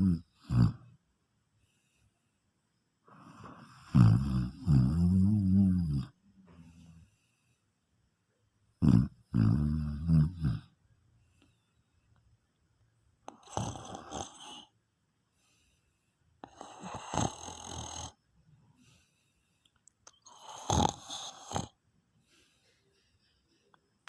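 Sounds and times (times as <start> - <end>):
person snoring: 0.0 - 0.8, 3.2 - 7.1, 8.8 - 10.7, 13.3 - 14.7, 16.4 - 18.2, 20.2 - 21.8
quiet breaths: 0.0 - 24.0.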